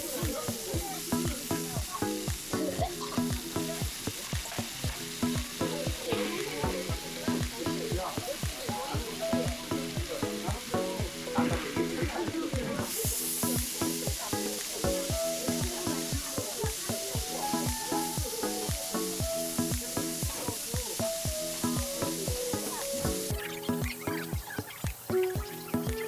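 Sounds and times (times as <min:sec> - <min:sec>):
meat sizzling on a griddle: 0:00.0 - 0:26.0
plucked background music: 0:00.0 - 0:26.0.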